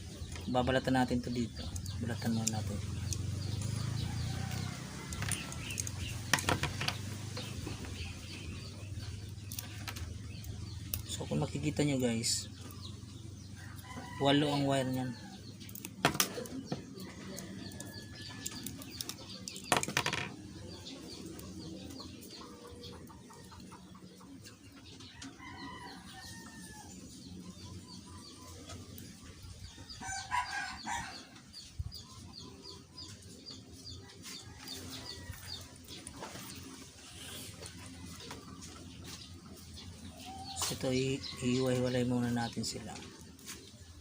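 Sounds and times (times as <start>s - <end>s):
chickens clucking: 20.5s - 44.0s.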